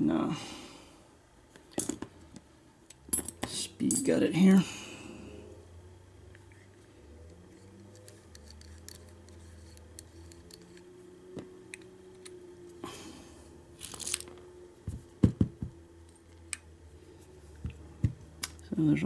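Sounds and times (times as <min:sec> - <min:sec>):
sharp knocks: 0:14.9 - 0:15.8.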